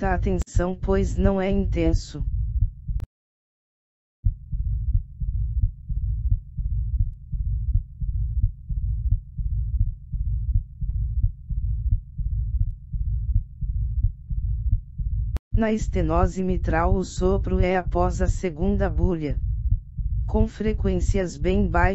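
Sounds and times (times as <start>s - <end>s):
heartbeat: 0.0s - 3.1s, 4.2s - 21.9s
low rumbling heart murmur: 0.0s - 3.1s, 4.3s - 21.9s.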